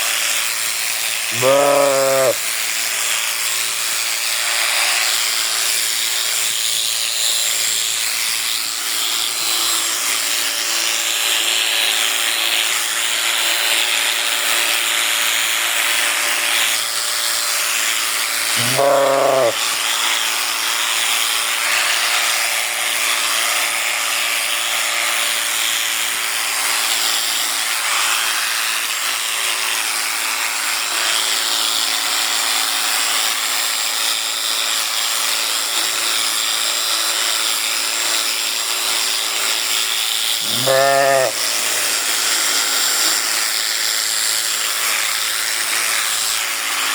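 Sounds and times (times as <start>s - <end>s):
electric shears buzzing whir: 0.0s - 46.9s
sheep bleating: 1.3s - 2.4s, 18.6s - 19.7s, 40.4s - 41.5s.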